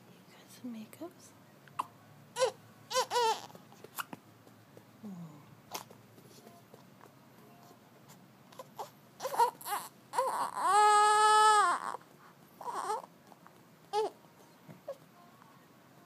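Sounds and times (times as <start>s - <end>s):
infant crying: 2.4s - 3.6s, 8.5s - 12.0s, 12.6s - 13.1s, 13.9s - 14.2s.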